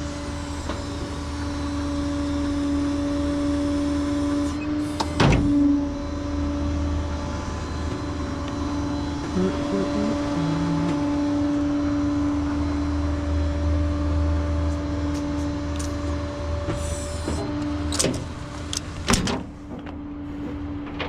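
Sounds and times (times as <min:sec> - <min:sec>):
hydraulics whining: 0:00.0 - 0:20.0
truck engine running: 0:05.8 - 0:20.9.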